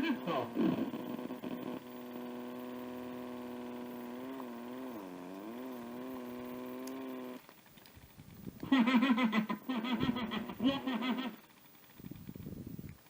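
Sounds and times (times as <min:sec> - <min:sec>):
garbled warbling toy voice: 0:00.0 - 0:01.0
buzzing drone: 0:00.0 - 0:13.0.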